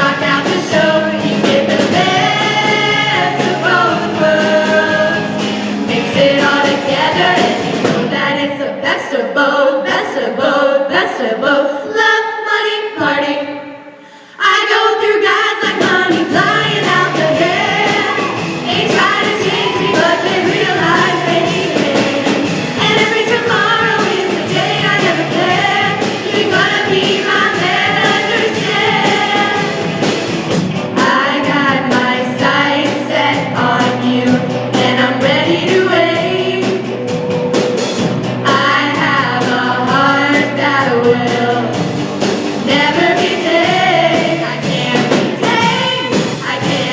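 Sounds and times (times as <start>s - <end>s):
pop backing track: 0.0s - 8.4s, 15.5s - 46.9s
women singing together: 0.0s - 30.2s, 30.9s - 36.9s, 38.4s - 41.8s, 42.6s - 46.9s.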